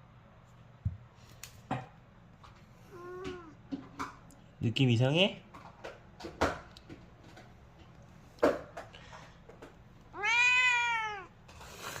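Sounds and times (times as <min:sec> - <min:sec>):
cat meowing: 0:02.9 - 0:03.6, 0:10.1 - 0:11.4.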